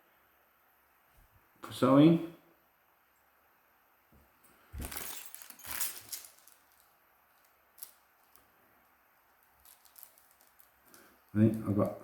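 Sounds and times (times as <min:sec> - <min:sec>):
thimbles rustling and clicking: 0:04.8 - 0:12.0.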